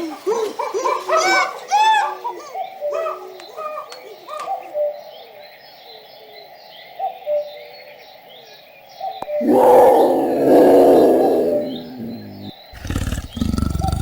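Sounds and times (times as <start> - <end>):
small birds chirping: 1.4 - 14.0
doves cooing: 9.2 - 14.0
loud rough animal call: 9.4 - 14.0.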